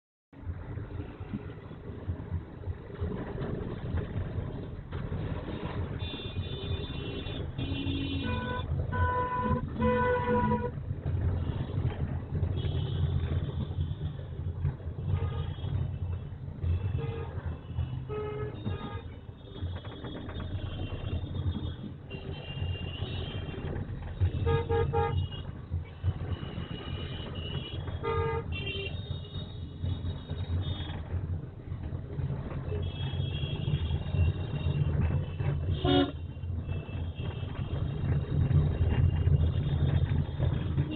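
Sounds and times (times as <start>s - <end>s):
car horn toots: 6.0s - 10.7s, 19.8s - 25.5s, 26.3s - 31.0s, 32.7s - 37.6s.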